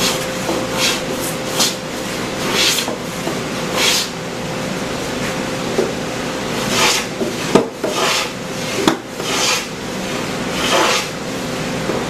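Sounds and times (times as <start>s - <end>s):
hand plane rasping on wood: 6.7s - 7.1s, 7.8s - 8.4s, 9.2s - 9.7s, 10.6s - 11.2s.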